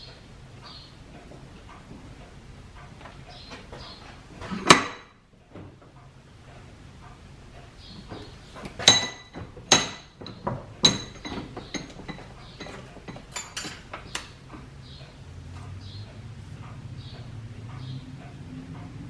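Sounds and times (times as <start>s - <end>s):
metal tools clanking: 7.8s - 15.1s.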